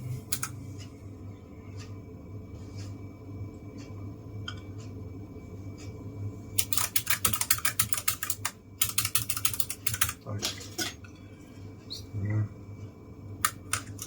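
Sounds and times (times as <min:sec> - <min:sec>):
fast typing on clicky keyboard: 0:06.6 - 0:10.2.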